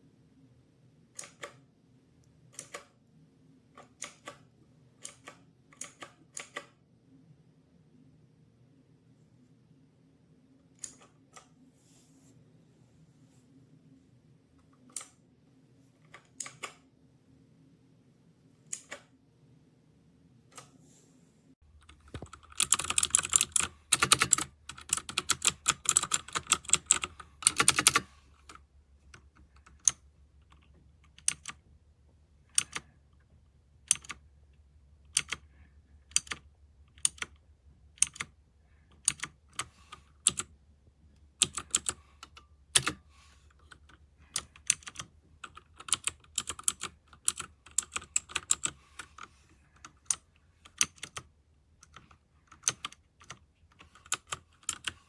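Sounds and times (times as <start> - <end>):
mechanical keyboard typing: 2.5 - 3.0, 3.8 - 6.8, 21.8 - 31.6, 32.5 - 32.9, 33.8 - 34.2, 35.1 - 35.4, 36.1 - 38.4, 39.0 - 40.5, 41.4 - 43.0, 43.6 - 55.0.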